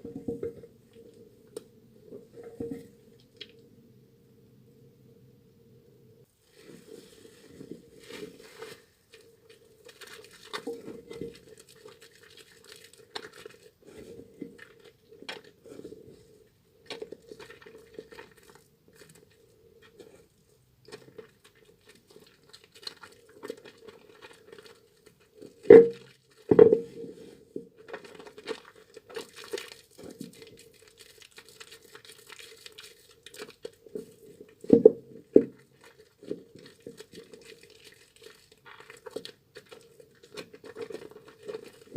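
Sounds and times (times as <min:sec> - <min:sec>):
faint steady hum: 0:00.0 - 0:10.0
hands lathering wet soap: 0:08.0 - 0:14.0, 0:16.8 - 0:26.5, 0:27.9 - 0:34.6, 0:35.7 - 0:41.9.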